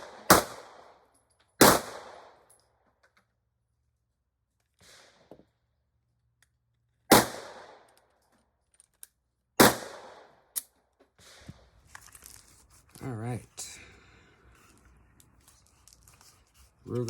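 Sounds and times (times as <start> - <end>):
pistol shots with echo: 0.0 - 1.0, 1.6 - 2.4, 7.1 - 7.8, 9.6 - 10.4.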